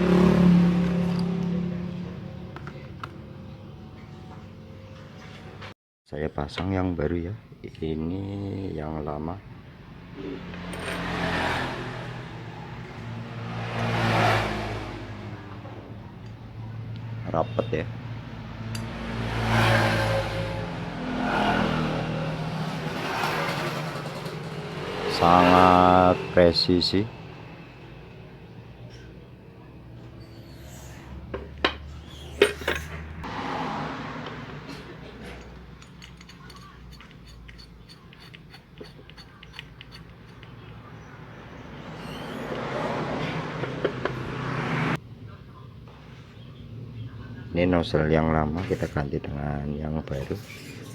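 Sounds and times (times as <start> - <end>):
vehicle engine humming: 8.7 - 45.4
small metal parts clicking: 35.3 - 40.6.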